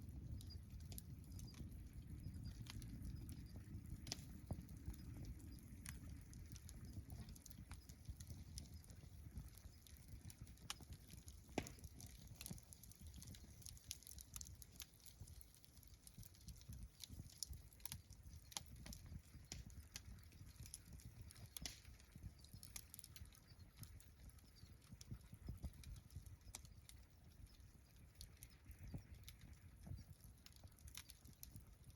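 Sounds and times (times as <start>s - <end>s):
campfire crackling: 0.0s - 31.9s
sharp pops: 11.5s - 11.9s.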